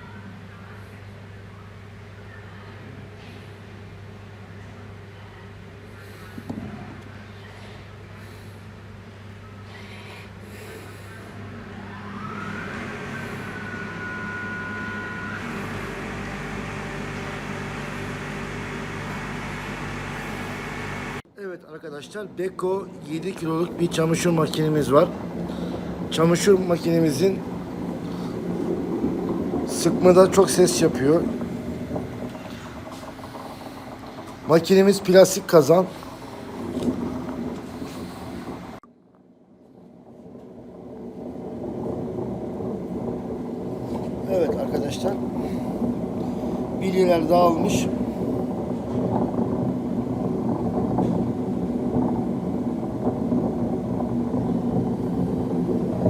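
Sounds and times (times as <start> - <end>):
washing machine spin rumbling: 0.0 - 38.8, 39.5 - 56.0
high motor whine: 11.4 - 21.2.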